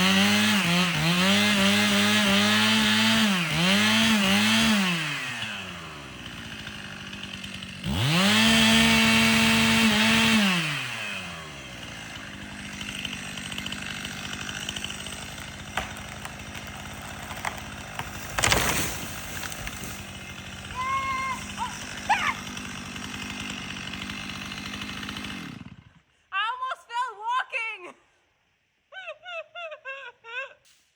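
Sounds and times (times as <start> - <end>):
chainsaw idling and revving: 0.0 - 26.3.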